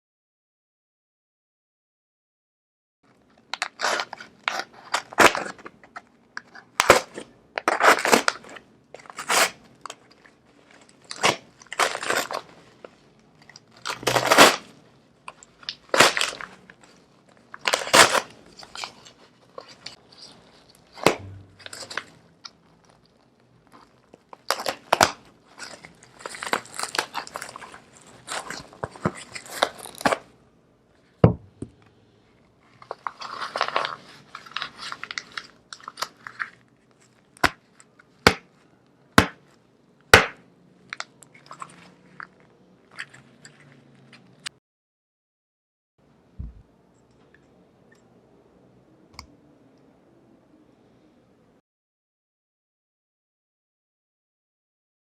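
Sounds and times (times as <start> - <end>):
packaging crinkling and scraping: 3.1 - 31.2, 32.2 - 38.8, 40.9 - 44.5.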